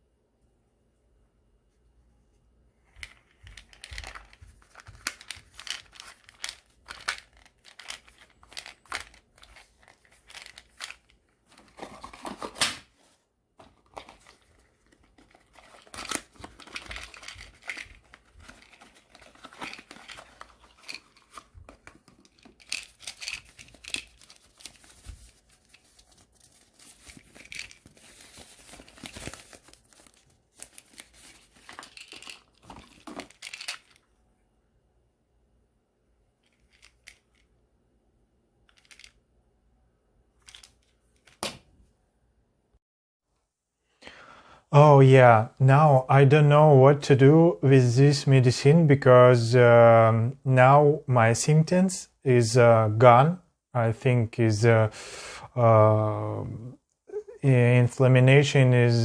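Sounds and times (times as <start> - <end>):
packaging crinkling and crackling: 13.7 - 34.0
wrapping tearing: 22.2 - 34.0.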